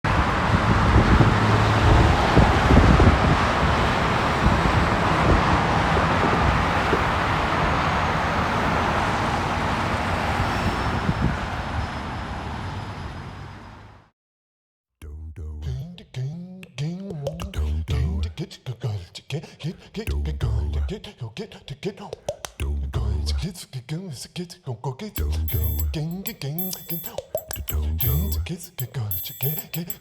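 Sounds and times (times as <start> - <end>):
cars passing: 0.1 - 14.0.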